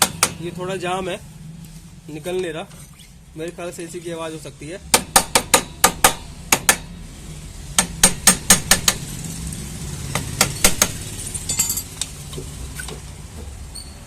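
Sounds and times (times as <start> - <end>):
hammer striking metal: 0.0 - 0.6, 7.8 - 9.0.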